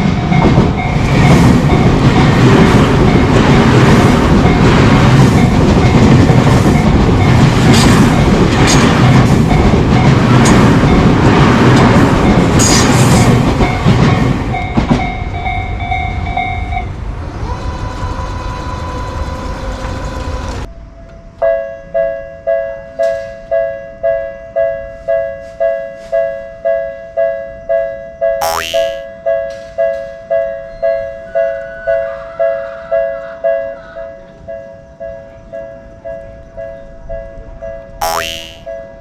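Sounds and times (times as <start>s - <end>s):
train wheels rushing on rails: 0.0s - 20.7s
wheels clacking over rail joints: 0.0s - 20.7s
level crossing warning bell: 13.5s - 17.0s.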